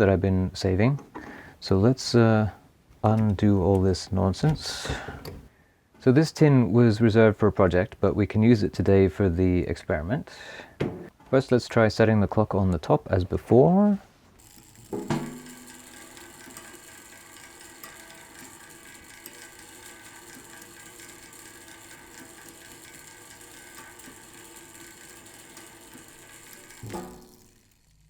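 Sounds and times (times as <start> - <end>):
clockwork mechanism ticking: 3.0 - 5.5, 14.4 - 28.0
handling bump: 10.8 - 11.1.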